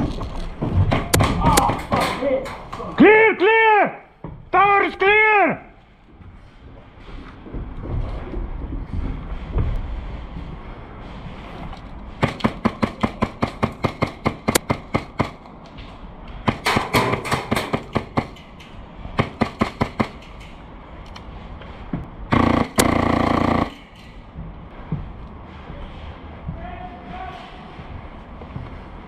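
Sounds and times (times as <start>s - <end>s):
airsoft gun rapid shots: 19.2s - 20.2s, 22.3s - 23.9s
airsoft full-auto burst: 22.3s - 23.9s.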